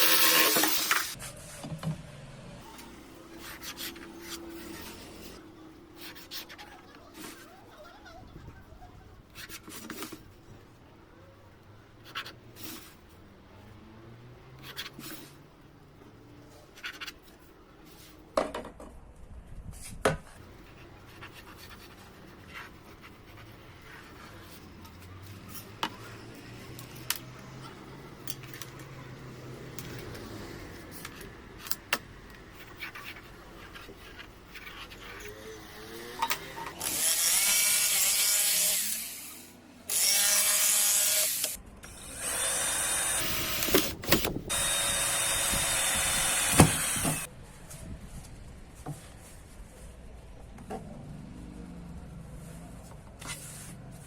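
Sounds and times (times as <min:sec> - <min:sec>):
power drill running: 0:00.0 - 0:01.2, 0:39.9 - 0:47.3.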